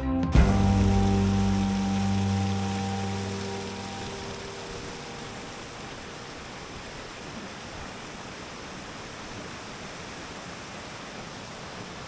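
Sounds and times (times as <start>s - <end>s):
waterfall rushing: 0.3s - 12.0s.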